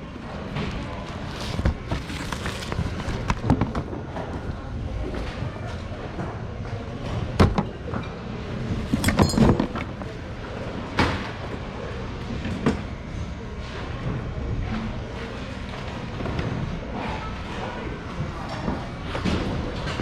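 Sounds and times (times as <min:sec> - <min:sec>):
store background: 0:00.0 - 0:20.0
items knocking and clattering in bin: 0:01.3 - 0:04.0, 0:08.9 - 0:10.0.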